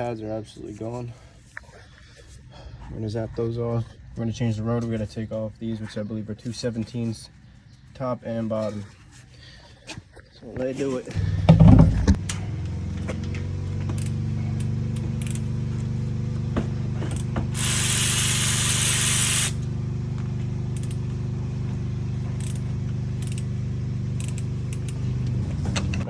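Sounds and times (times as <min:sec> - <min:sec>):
power tool motor running: 0:11.2 - 0:25.7
sharp knock: 0:11.5 - 0:12.3
spray hissing: 0:17.5 - 0:19.6.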